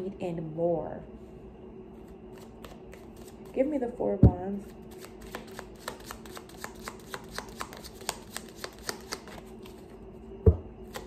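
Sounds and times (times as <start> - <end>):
cards being shuffled: 2.0 - 3.6, 4.7 - 10.0.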